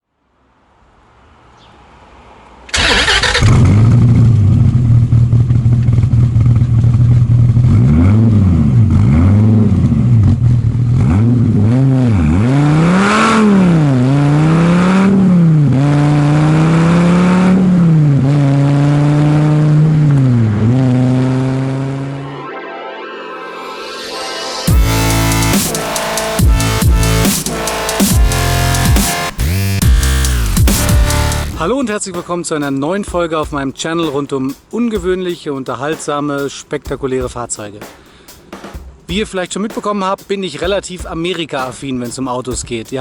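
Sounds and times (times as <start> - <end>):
car engine starting and revving: 2.7 - 22.3, 24.7 - 31.7.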